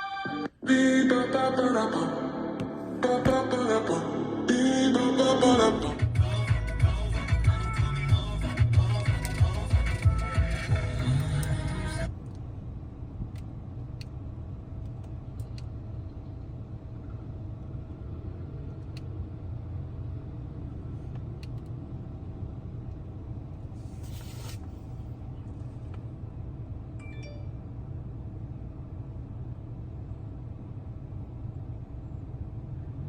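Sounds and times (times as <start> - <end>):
music: 0.0 - 12.1
car interior rumble: 2.7 - 27.0
brief hiss: 23.8 - 25.0.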